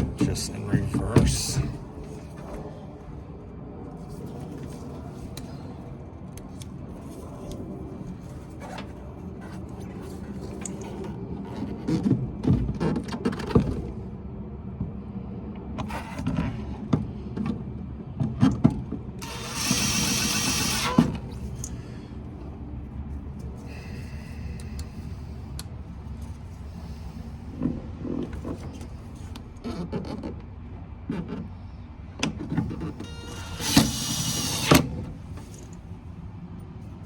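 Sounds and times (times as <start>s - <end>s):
cordless drill driving screw: 19.2s - 21.4s, 33.0s - 35.7s.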